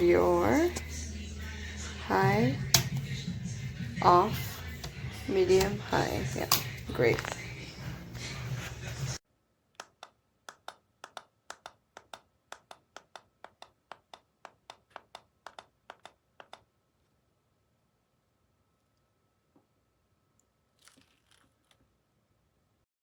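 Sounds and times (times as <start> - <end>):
voice and music: 0.0 - 9.2.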